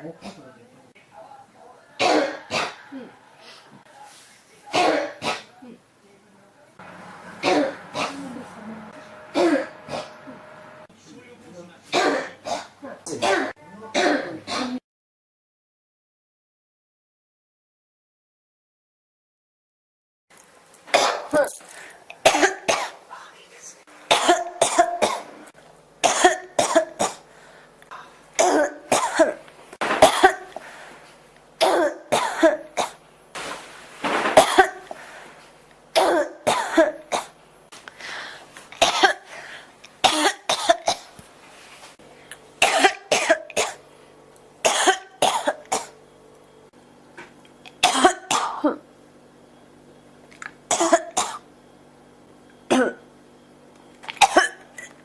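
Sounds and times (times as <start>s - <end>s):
person coughing: 2.0s - 3.0s, 7.4s - 8.4s, 9.3s - 10.3s, 11.9s - 14.8s, 22.3s - 23.0s, 24.1s - 25.3s, 26.0s - 27.2s, 28.4s - 29.4s, 30.0s - 30.6s, 31.6s - 33.0s, 34.4s - 34.9s, 36.0s - 37.3s, 38.8s - 39.3s, 40.0s - 41.1s, 42.6s - 43.8s, 44.7s - 45.9s, 47.8s - 48.8s, 52.7s - 53.0s, 54.2s - 54.9s.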